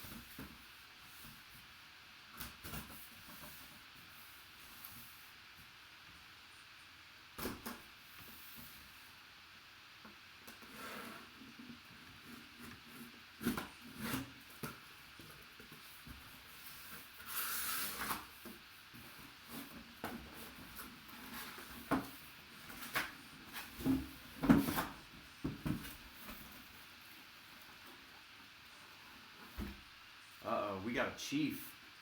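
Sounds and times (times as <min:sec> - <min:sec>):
cardboard box knocks and thumps: 0:21.4 - 0:26.5.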